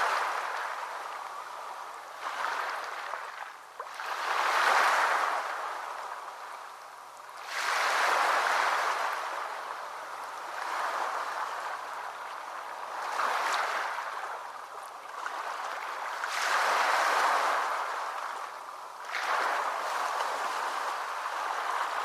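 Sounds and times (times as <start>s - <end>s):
sea waves washing in: 0.0s - 6.2s, 15.3s - 22.0s.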